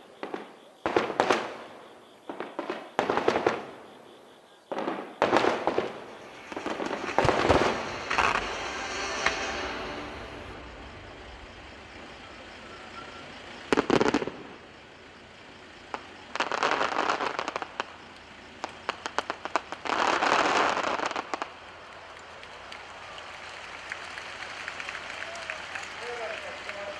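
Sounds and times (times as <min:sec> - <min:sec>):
loud firework burst: 0:04.7 - 0:18.0
fireworks crackling: 0:04.7 - 0:26.9.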